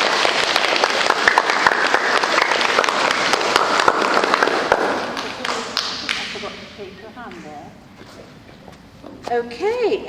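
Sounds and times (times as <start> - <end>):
children applauding: 0.0 - 6.8.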